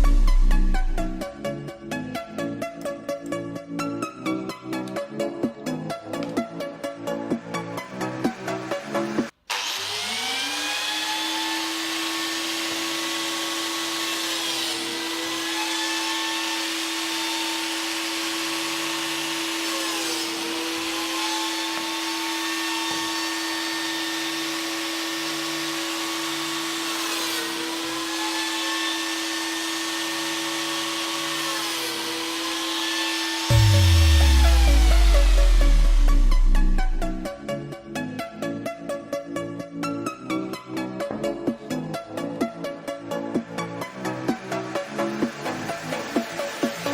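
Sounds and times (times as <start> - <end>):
biscuit joiner motor running: 9.5 - 37.3.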